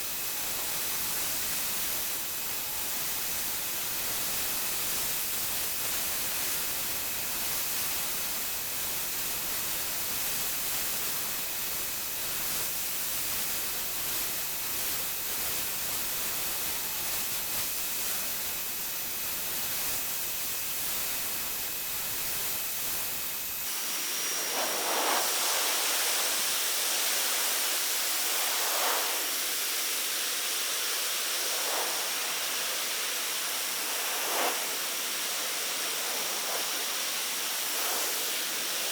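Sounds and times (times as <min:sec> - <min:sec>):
thin steady whistle: 0:00.0 - 0:26.4.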